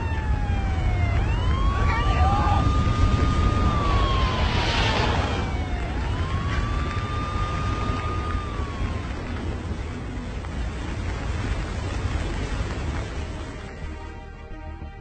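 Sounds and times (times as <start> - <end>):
siren wailing: 0.0 - 10.2
strong wind rumble: 0.0 - 15.0.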